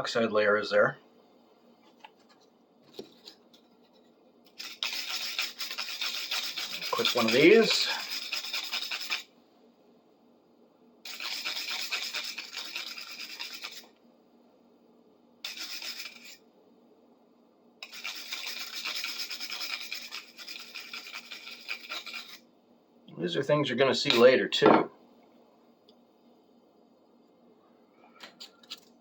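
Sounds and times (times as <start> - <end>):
sandpaper scratching on steel: 4.6 - 9.3, 11.1 - 13.9, 15.4 - 16.4, 17.8 - 22.4.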